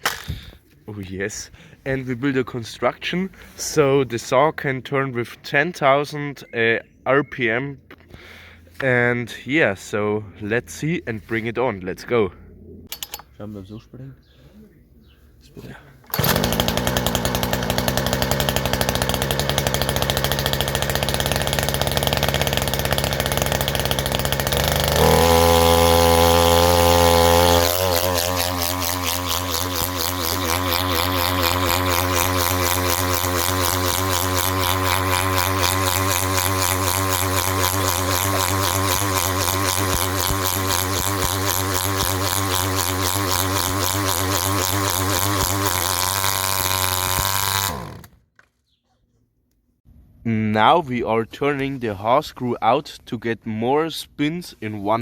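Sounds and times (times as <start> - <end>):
chainsaw engine running at high revs: 16.1 - 48.2.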